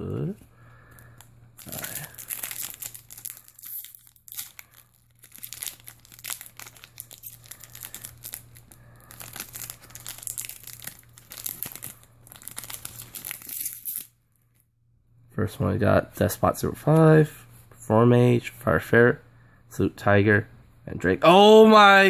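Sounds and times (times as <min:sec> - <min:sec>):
packaging tearing: 0:01.6 - 0:14.1
plastic packaging crinkling: 0:01.6 - 0:14.1.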